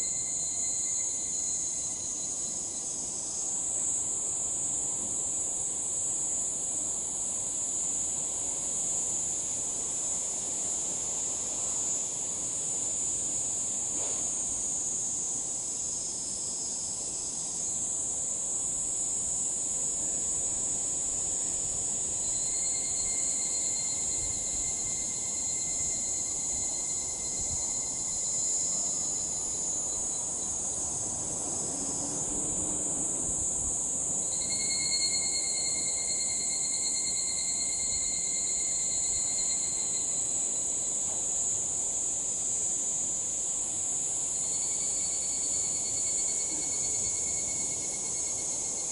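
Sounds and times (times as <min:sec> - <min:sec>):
cicadas calling: 0:00.0 - 0:04.8, 0:15.8 - 0:48.9
pulsing cicada calls: 0:00.0 - 0:48.9.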